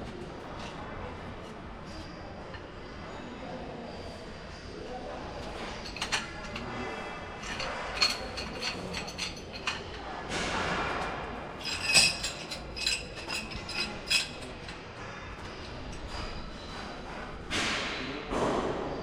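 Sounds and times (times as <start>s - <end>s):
light metallic clinks and taps: 5.4s - 6.7s, 7.4s - 10.0s.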